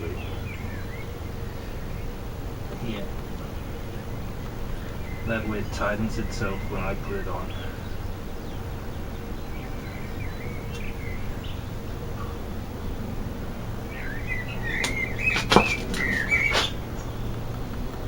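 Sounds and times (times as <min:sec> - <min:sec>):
birds chirping: 0:00.0 - 0:17.8
sharp clicks and knocks: 0:14.8 - 0:16.7.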